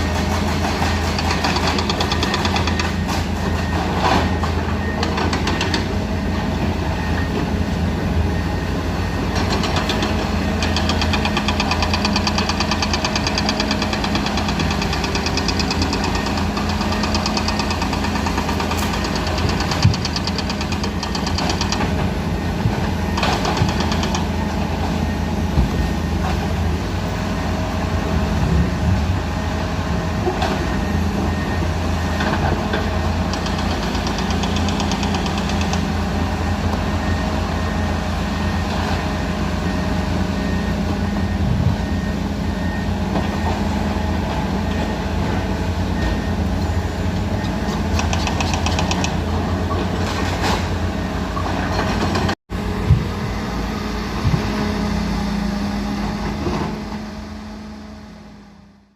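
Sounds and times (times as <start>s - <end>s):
excavator diesel engine under load: 0.0s - 58.9s.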